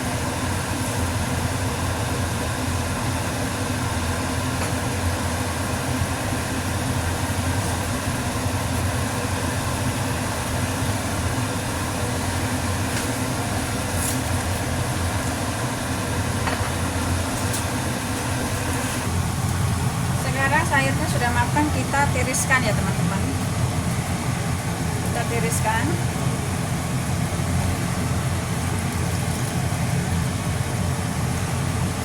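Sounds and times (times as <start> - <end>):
low mechanical hum: 0.0 - 32.0.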